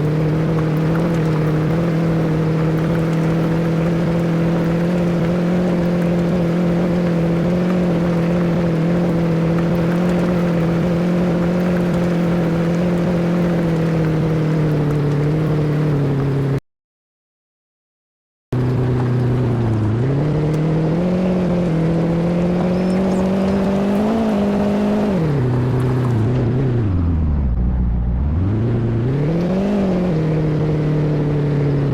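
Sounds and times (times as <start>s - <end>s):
motor engine running: 0.0s - 16.6s, 18.6s - 31.9s.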